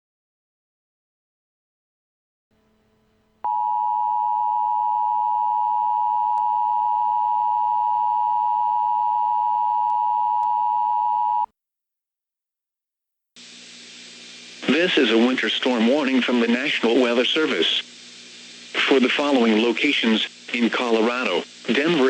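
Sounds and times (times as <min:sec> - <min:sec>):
two-tone alarm: 0:03.4 - 0:11.5
faint hiss: 0:13.4 - 0:22.0.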